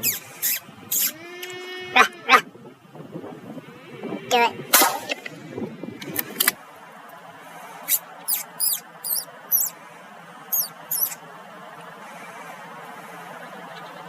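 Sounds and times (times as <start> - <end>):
animal squeaks: 0.0 - 2.4, 7.9 - 9.8, 10.5 - 11.2.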